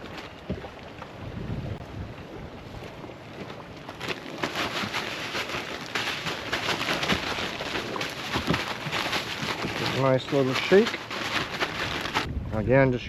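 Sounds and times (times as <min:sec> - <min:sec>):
bag crinkling while shaken: 0:04.0 - 0:12.3.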